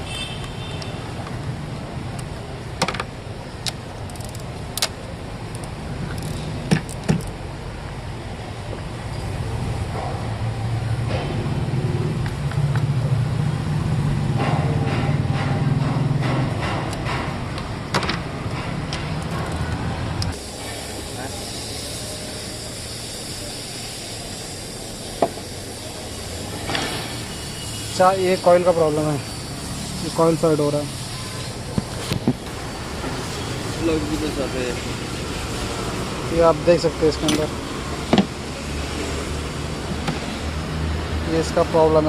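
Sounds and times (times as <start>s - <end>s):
sharp clicks and knocks: 2.1s - 7.4s, 14.2s - 20.4s, 37.2s - 38.4s.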